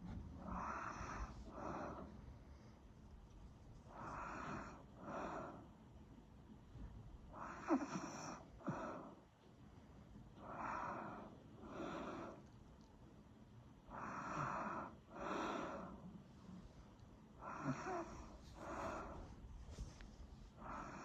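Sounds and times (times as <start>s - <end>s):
person snoring: 17.4s - 19.2s.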